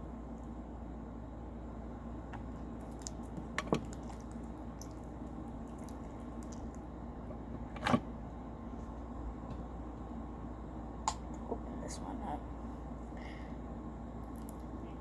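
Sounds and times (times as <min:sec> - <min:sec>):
slime squelching: 0:02.6 - 0:07.0.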